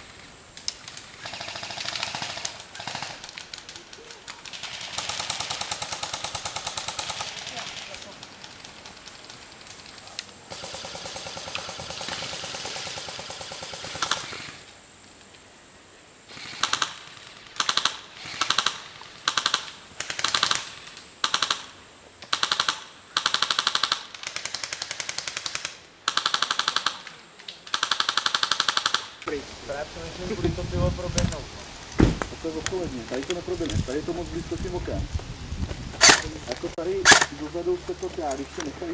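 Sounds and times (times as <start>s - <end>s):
airsoft guns firing bursts: 0.8s - 8.2s, 10.5s - 14.6s, 16.3s - 29.2s, 36.0s - 36.3s, 37.0s - 37.4s.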